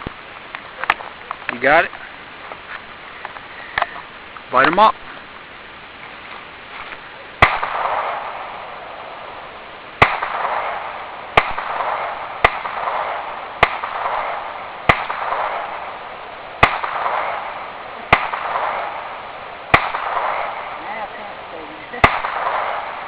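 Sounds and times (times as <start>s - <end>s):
pistol shots with echo: 7.4s - 21.2s, 21.9s - 23.0s.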